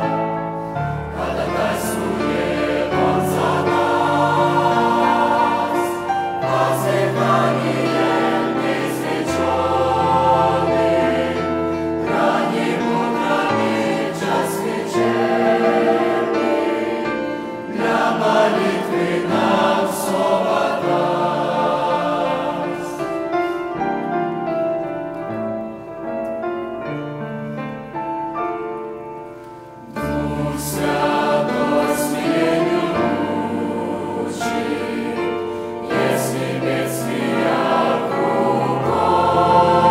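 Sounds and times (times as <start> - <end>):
choir singing a hymn: 0.0 - 25.8, 28.5 - 39.9.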